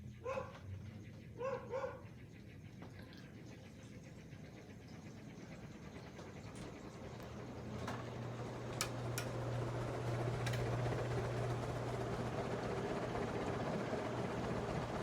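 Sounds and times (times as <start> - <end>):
ceiling fan motor hum: 0.0 - 15.0
air noise from fan blades: 3.0 - 15.0.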